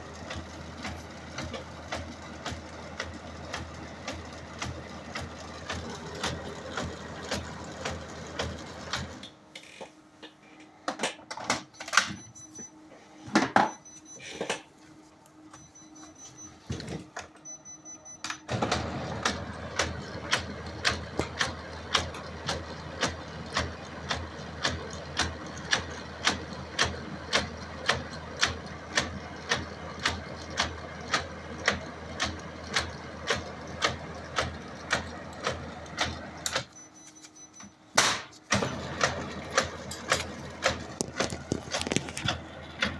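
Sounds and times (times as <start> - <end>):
laser printer knocking: 38.0 - 42.9.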